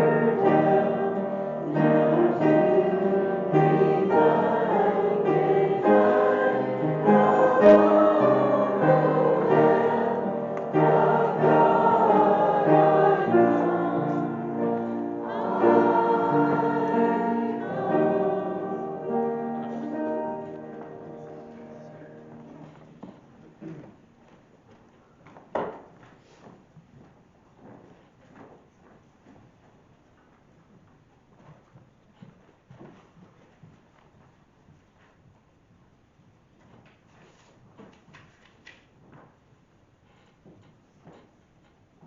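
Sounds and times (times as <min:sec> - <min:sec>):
choir singing a hymn: 0:00.0 - 0:22.8
keyboard accompaniment: 0:00.0 - 0:22.9.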